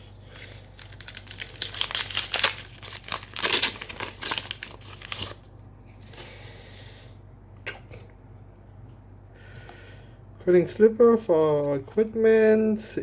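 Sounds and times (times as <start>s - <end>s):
wrapper crinkling and tearing: 0.2s - 5.5s.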